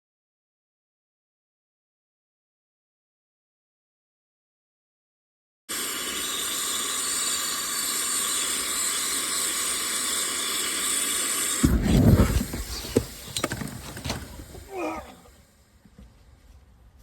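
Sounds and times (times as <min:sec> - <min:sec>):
gas hissing from a port: 0:05.7 - 0:16.0.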